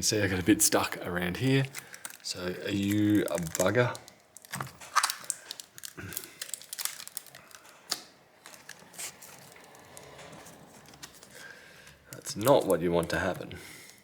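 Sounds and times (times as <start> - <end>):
plastic film crinkling: 1.4 - 14.0.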